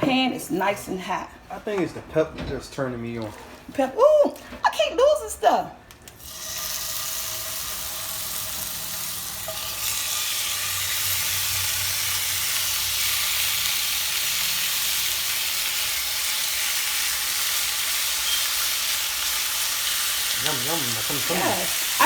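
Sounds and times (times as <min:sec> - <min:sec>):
chicken sizzling in hot oil: 0:06.2 - 0:22.0.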